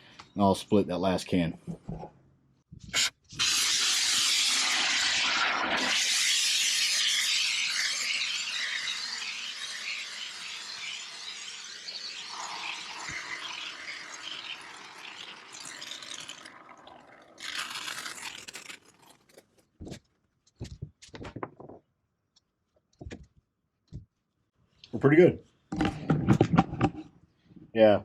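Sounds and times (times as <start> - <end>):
spray foam sputtering hiss: 3.0 - 19.1.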